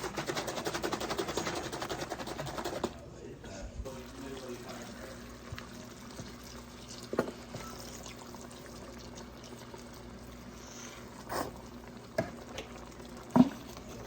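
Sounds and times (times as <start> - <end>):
food bubbling in a pan: 3.8 - 14.0.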